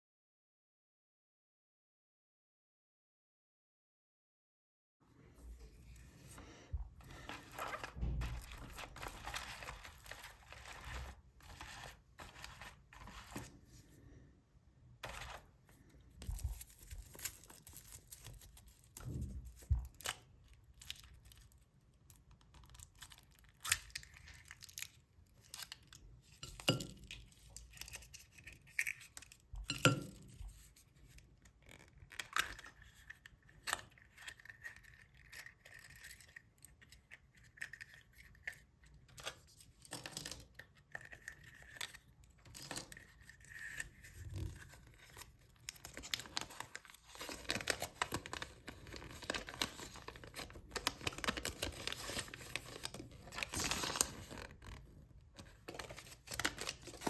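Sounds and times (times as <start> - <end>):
foil wrappers crinkling: 7.1 - 13.6, 42.6 - 54.8.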